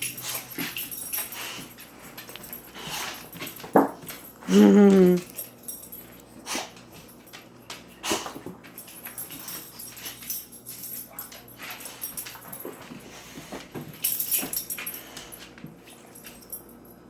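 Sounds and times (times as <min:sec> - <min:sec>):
dog whimpering: 0:04.4 - 0:05.4.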